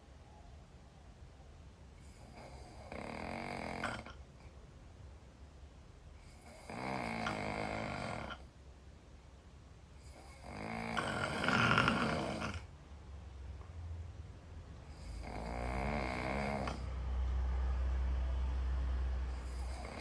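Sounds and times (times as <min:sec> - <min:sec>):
woman snoring loudly: 0:02.1 - 0:04.2, 0:06.4 - 0:08.4, 0:10.1 - 0:12.7, 0:14.9 - 0:17.0, 0:19.3 - 0:20.0
low steady rumble: 0:12.7 - 0:15.2, 0:16.8 - 0:20.0.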